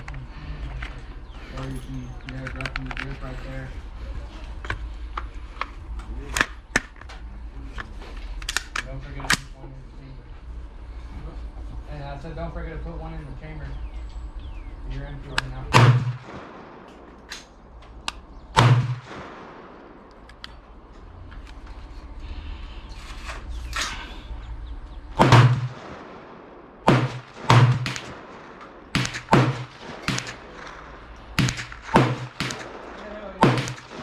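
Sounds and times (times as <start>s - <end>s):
pistol gunshots: 15.7s - 20.3s, 25.2s - 34.0s.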